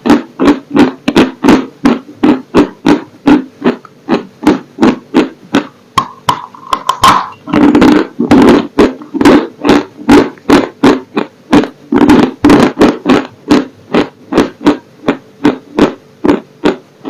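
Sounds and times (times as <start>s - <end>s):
crunchy chewing: 0.0s - 6.4s, 7.0s - 16.8s.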